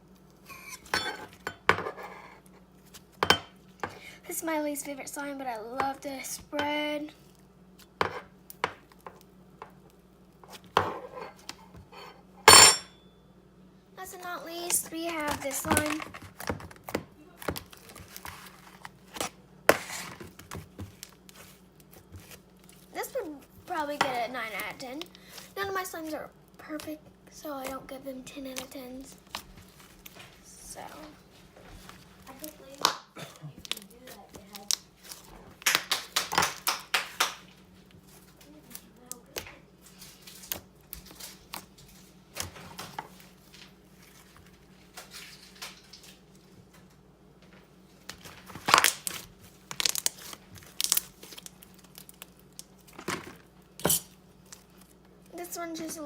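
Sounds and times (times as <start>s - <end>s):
slime squished by hand: 48.1s - 52.9s.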